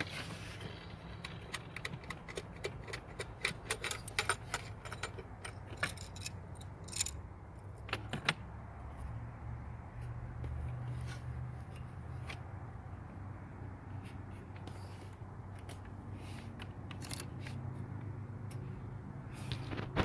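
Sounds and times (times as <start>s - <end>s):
light clicks and scrapes: 10.0s - 12.7s, 13.8s - 20.0s.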